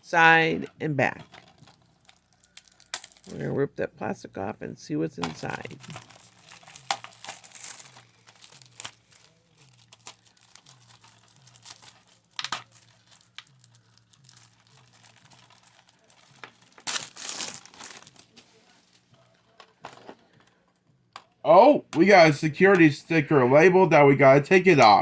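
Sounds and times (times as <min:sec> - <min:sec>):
plastic shrink-wrap crinkling: 0:01.2 - 0:03.6, 0:05.3 - 0:20.2.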